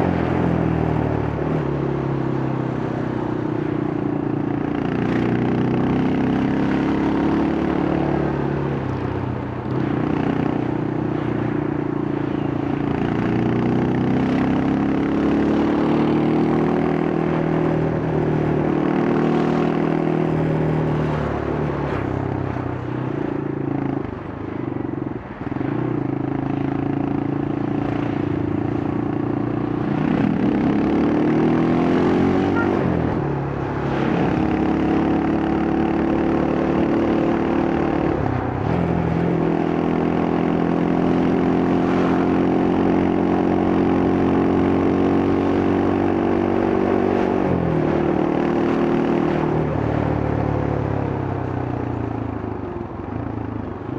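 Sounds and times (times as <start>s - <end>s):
motorcycle engine revving: 24.7s - 52.1s.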